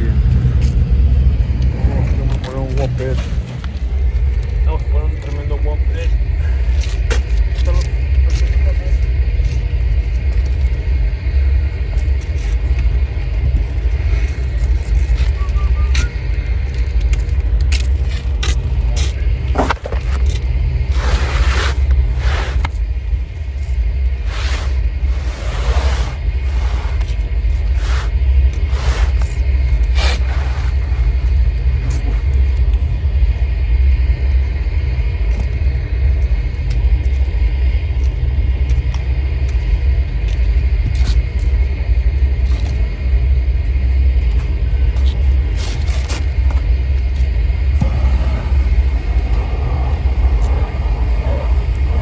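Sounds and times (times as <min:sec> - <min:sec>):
roofing torch roaring: 0:00.0 - 0:08.3, 0:16.0 - 0:37.0, 0:44.6 - 0:52.0
scraping hisses: 0:20.8 - 0:22.8, 0:24.2 - 0:32.4, 0:47.8 - 0:52.0.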